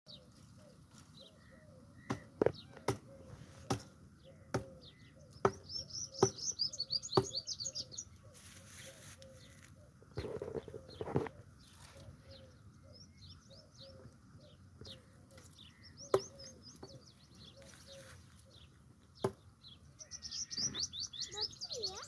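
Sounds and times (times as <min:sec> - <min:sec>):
rustle: 0:00.1 - 0:01.7, 0:07.8 - 0:12.6, 0:14.9 - 0:18.9
birds chirping: 0:00.1 - 0:22.0.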